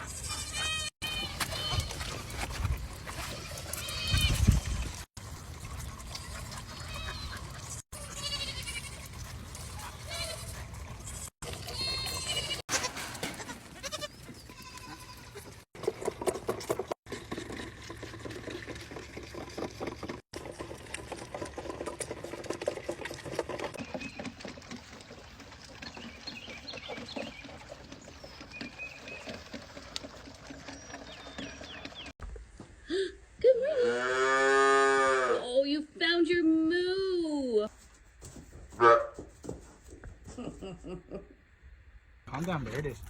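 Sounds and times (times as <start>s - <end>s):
animal bleating: 0.0s - 2.0s, 8.0s - 9.1s, 10.0s - 15.6s.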